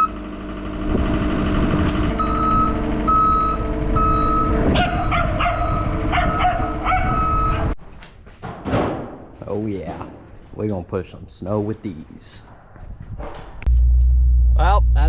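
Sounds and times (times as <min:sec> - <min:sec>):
diesel engine running: 0:00.0 - 0:07.8, 0:13.6 - 0:15.0
reversing alarm beeping: 0:02.1 - 0:07.8
dog barking: 0:04.8 - 0:07.2.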